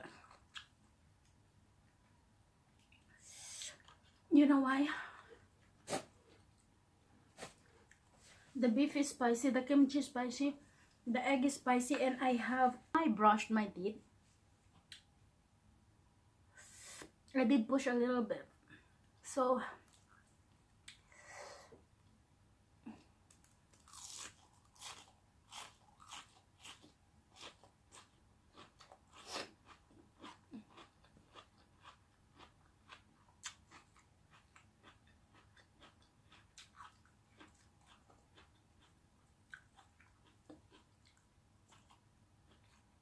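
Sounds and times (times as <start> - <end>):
chewing crisp food: 3.7 - 4.3, 23.3 - 43.0.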